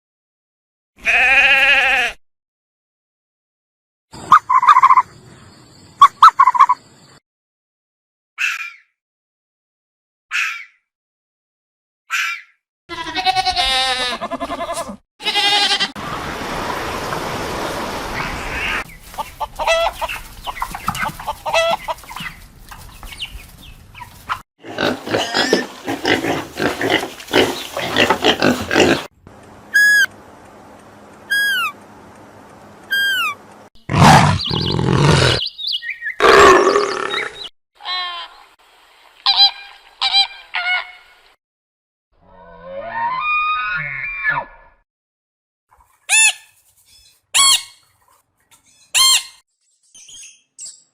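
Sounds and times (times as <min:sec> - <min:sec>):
falling whistle-like calls: 0:29.7 - 0:30.1, 0:31.3 - 0:31.8
animal calls: 0:32.9 - 0:35.5.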